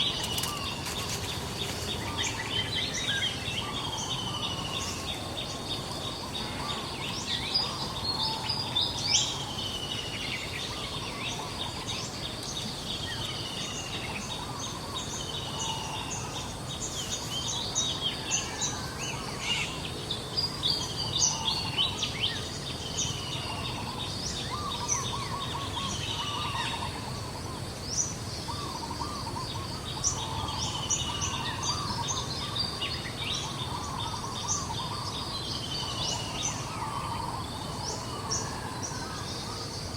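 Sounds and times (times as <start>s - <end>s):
birds chirping and whistling: 0.0s - 12.3s, 20.4s - 39.8s
low bird warbling calls: 20.5s - 39.9s.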